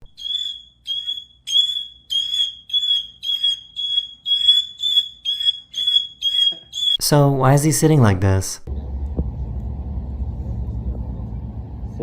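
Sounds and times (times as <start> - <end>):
high-pitched alarm beeps: 0.1 - 7.0.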